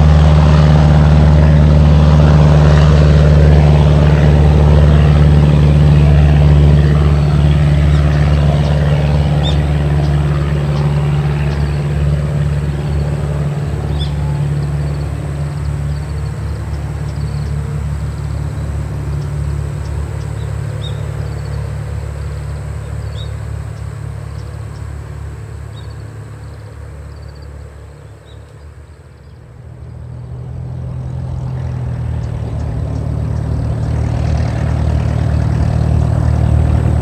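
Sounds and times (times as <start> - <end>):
light aircraft engine droning: 0.0 - 37.0
faint bird chirps: 19.2 - 24.9, 25.7 - 30.0.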